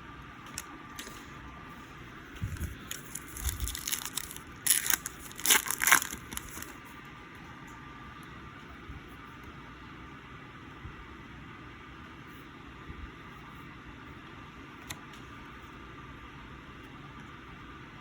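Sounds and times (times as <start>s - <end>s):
card wrapping crinkling: 0.4s - 1.3s, 2.4s - 6.8s.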